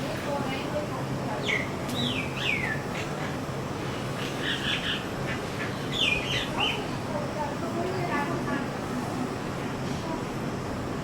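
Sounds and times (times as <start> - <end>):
myna bird calling: 1.3 - 7.0.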